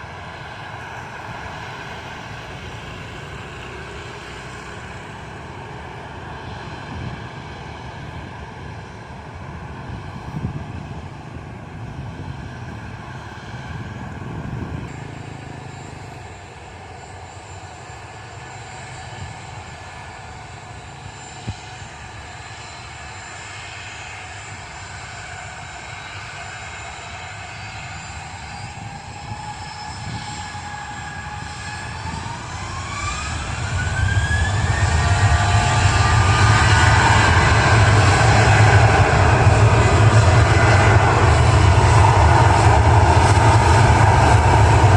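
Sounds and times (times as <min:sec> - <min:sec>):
jet engines whining and spooling up: 0:00.0 - 0:44.9.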